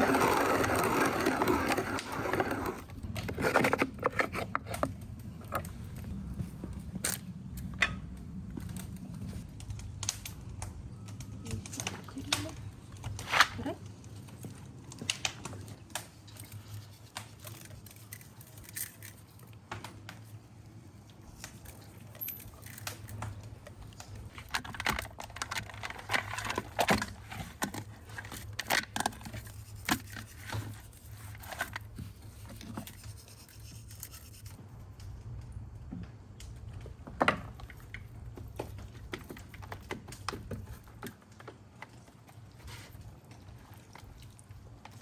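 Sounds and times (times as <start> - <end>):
scraping and tearing: 0.0 - 6.0, 15.8 - 19.6, 24.1 - 34.6.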